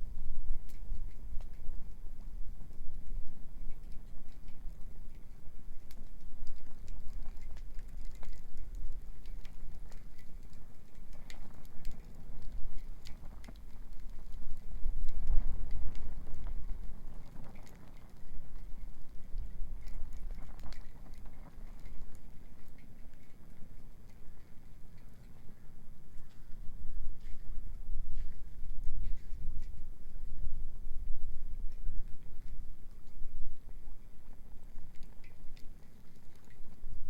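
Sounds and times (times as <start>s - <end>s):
bonfire crackling and popping: 0.1s - 25.6s, 31.0s - 37.0s.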